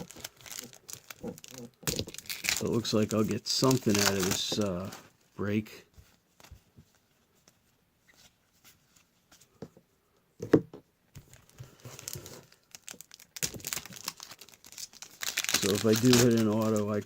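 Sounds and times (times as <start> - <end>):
card pack wrappers crinkling: 0.0 - 5.0, 11.2 - 17.0.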